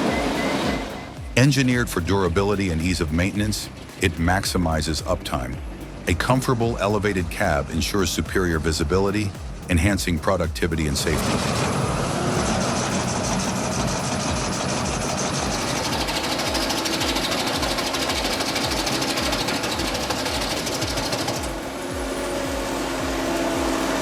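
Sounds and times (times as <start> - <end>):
machine pulsing rapidly: 0.0 - 4.2, 11.0 - 24.0.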